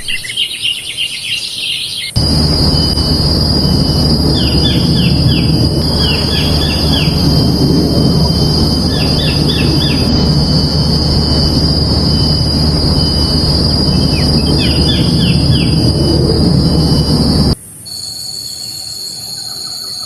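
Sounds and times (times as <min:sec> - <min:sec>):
loud low rumble: 0:02.2 - 0:17.6
high-pitched insect drone: 0:02.2 - 0:20.0.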